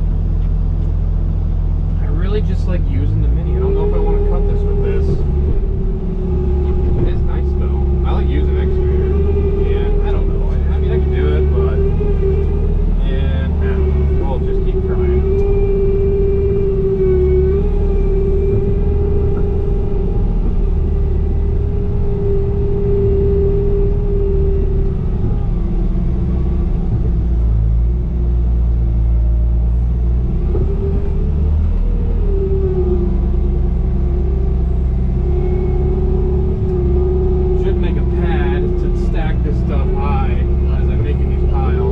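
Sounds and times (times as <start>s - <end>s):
excavator diesel engine under load: 0.0s - 41.9s.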